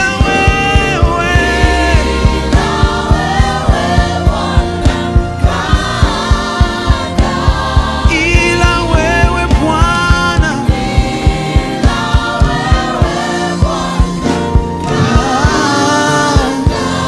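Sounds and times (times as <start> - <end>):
band with quick drum beat: 0.0 - 17.0
voices singing together: 0.0 - 17.0.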